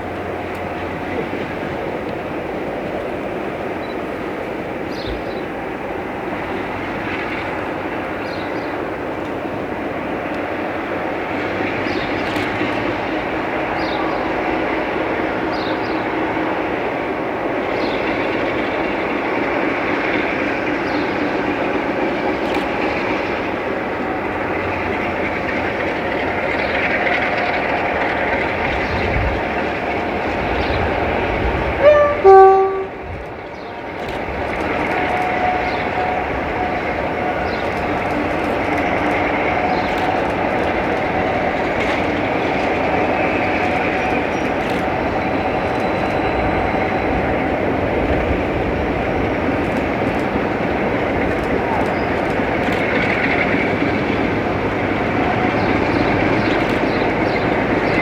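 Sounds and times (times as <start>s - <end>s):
diesel locomotive engine working hard: 0.0s - 58.0s
loud locomotive horn: 30.3s - 58.0s.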